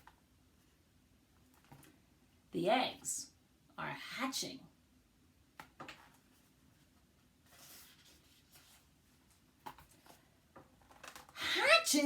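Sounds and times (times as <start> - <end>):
paper rustling: 5.9 - 10.2.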